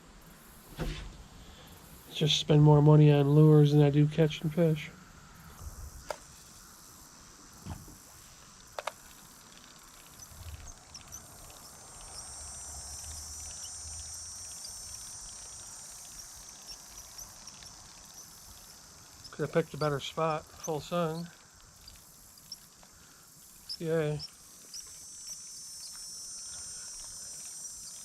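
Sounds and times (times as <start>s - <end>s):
insects buzzing: 0.0s - 28.0s
sharp clicks: 8.7s - 28.0s.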